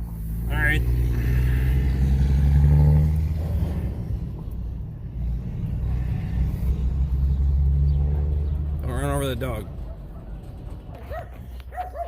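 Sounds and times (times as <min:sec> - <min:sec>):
pickup truck engine running: 0:03.4 - 0:12.0.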